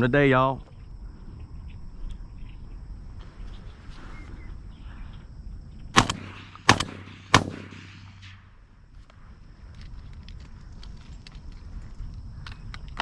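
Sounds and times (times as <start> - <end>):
shotgun shots: 6.0 - 8.6.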